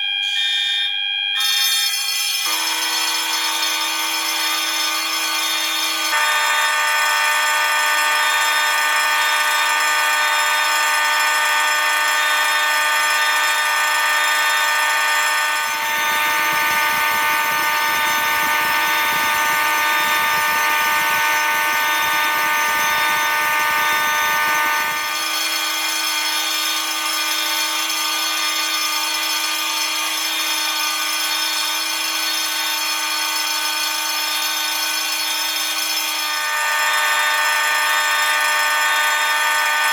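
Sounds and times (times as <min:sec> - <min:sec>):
fire alarm horns and bell: 0:00.0 - 0:39.9.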